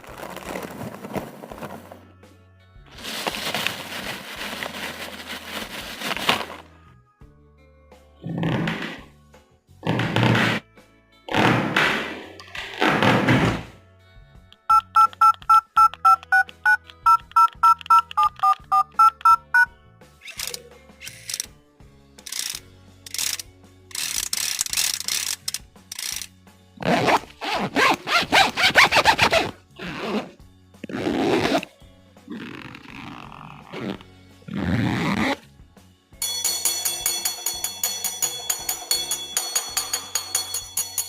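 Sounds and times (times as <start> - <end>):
short electronic beeps: 14.7 - 19.7.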